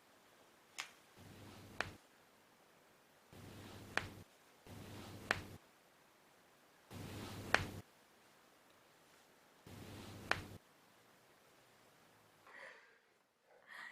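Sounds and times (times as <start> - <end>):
soft rustle of handling: 3.3 - 5.6, 6.9 - 10.6.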